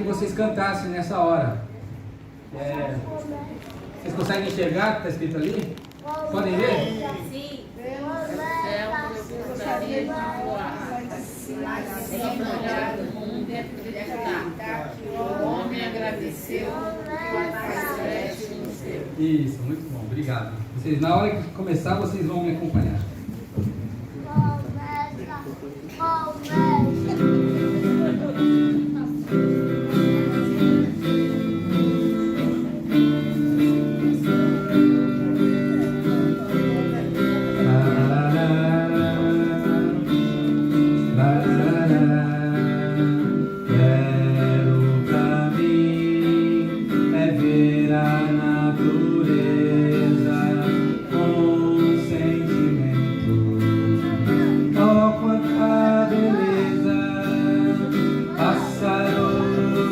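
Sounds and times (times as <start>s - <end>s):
acoustic guitar strumming chords: 26.0s - 59.9s.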